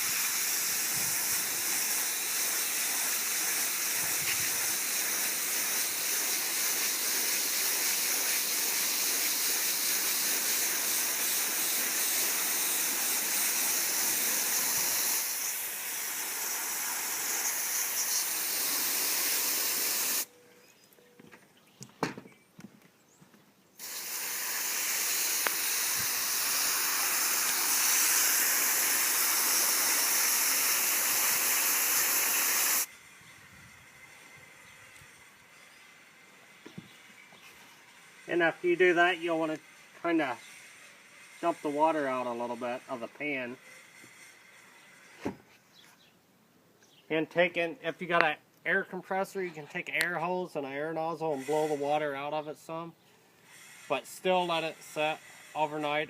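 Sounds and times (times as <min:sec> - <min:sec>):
hose spraying water: 0:00.0 - 0:20.3, 0:23.8 - 0:33.0, 0:50.1 - 0:52.3, 0:53.4 - 0:56.0.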